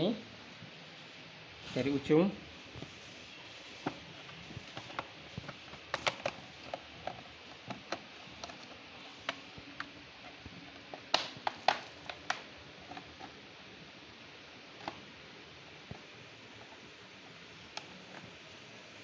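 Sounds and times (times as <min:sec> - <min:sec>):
plastic clips snapping: 0:11.0 - 0:13.3.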